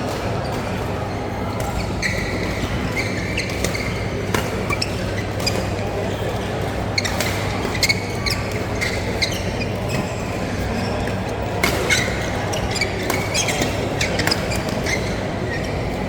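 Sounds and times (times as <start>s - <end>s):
shoe squeaks on court floor: 0.3s - 16.0s
racket hitting shuttlecock: 1.6s - 5.8s, 7.0s - 9.0s, 11.6s - 15.2s.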